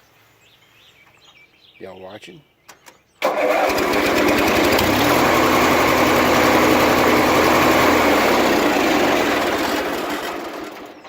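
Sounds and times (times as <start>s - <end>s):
riding lawnmower engine running: 3.2s - 11.0s.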